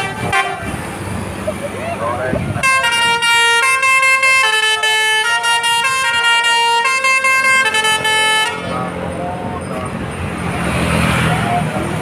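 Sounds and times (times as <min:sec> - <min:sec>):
bus musical horn playing a tune: 0:00.0 - 0:01.1, 0:02.6 - 0:08.9.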